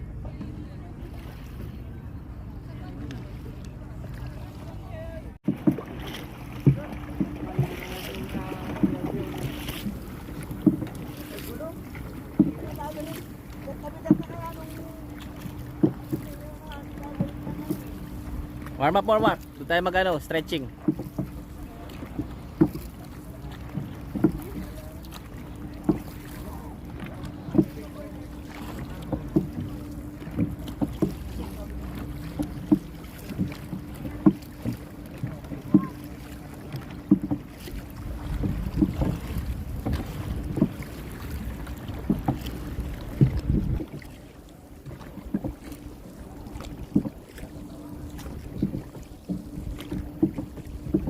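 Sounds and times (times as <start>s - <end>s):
water splashes: 0.0s - 51.0s
paddle strokes thudding: 2.8s - 51.0s
wind buffeting microphone: 37.9s - 44.3s.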